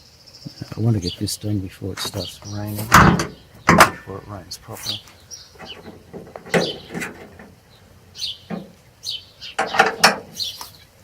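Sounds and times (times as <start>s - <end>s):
objects knocking and rustling: 2.0s - 4.2s, 5.6s - 7.6s, 8.5s - 8.8s, 9.6s - 10.8s.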